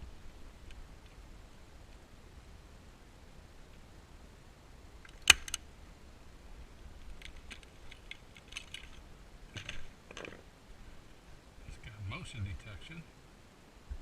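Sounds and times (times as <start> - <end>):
light clicks and rattles: 7.0 - 10.5.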